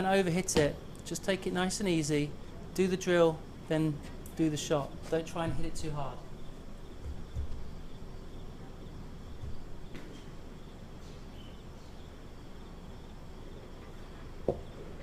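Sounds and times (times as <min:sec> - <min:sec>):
faint outdoor background noise: 0:00.0 - 0:15.0.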